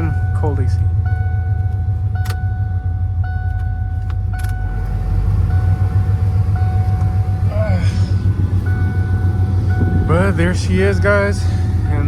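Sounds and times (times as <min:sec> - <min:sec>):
exhaust droning while driving: 0:00.0 - 0:12.0
thin steady tone: 0:05.4 - 0:12.0.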